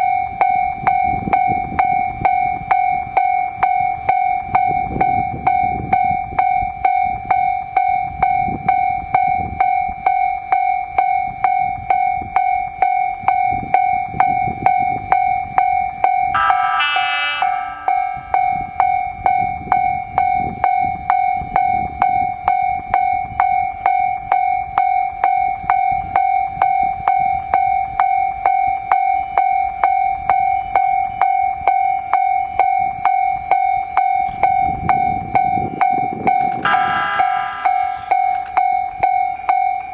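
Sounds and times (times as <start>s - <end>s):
level crossing bell ringing: 16.2s - 20.6s, 36.6s - 39.9s
train horn blast: 16.4s - 19.0s, 36.7s - 38.5s.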